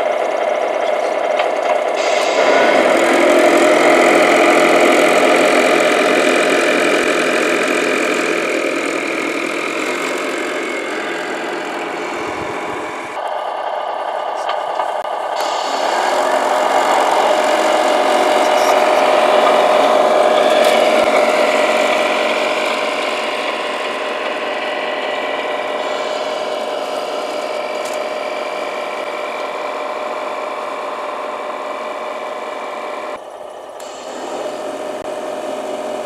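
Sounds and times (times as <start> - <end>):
electric motor and gears whining: 0.0 - 36.0.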